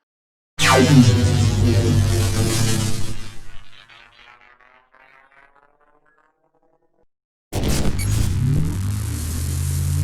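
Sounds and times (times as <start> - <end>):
sci-fi energy blast: 0.6 - 4.5
pulsing electronic tail: 0.6 - 7.0.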